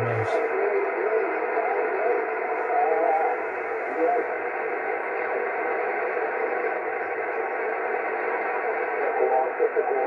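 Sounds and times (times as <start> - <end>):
faint distant voice: 0.0 - 0.4.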